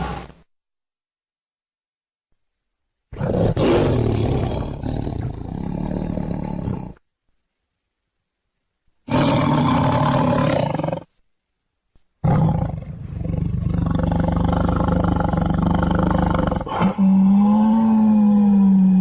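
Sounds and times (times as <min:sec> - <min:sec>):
tiger roaring: 0:03.1 - 0:07.0, 0:09.1 - 0:11.1, 0:12.2 - 0:19.0.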